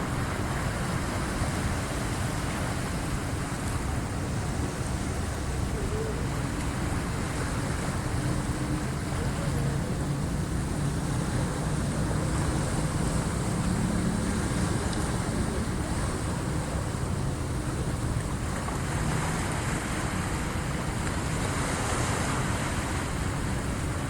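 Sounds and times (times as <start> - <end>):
sea waves washing in: 0.0 - 24.0.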